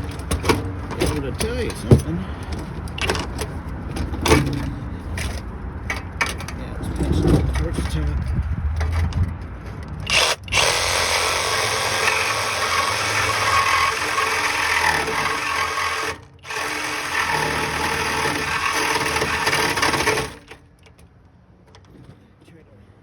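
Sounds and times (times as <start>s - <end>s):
power saw cutting steel pipe: 10.1s - 20.6s.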